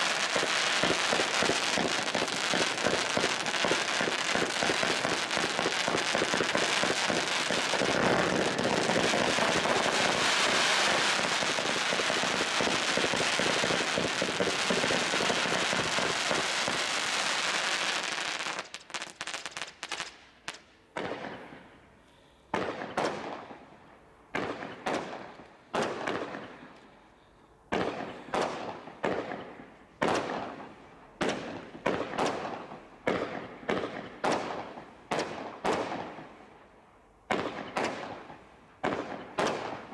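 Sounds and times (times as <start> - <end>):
firework bangs: 0.0 - 21.6, 37.3 - 39.9
firework barrage crackling: 0.0 - 21.6.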